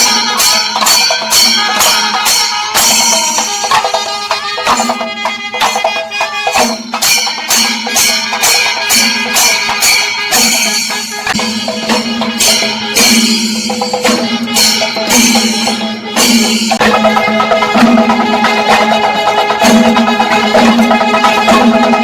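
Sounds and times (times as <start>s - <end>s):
cymbals clashing: 0.0s - 22.0s
drums beaten in driving rhythm: 0.0s - 22.0s
held melody line: 10.4s - 22.0s.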